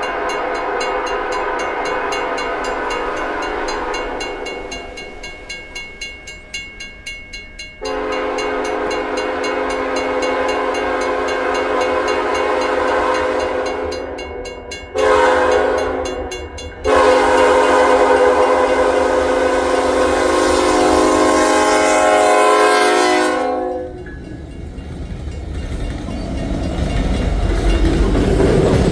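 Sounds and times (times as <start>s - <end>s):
train horn blasts: 7.8s - 24.1s.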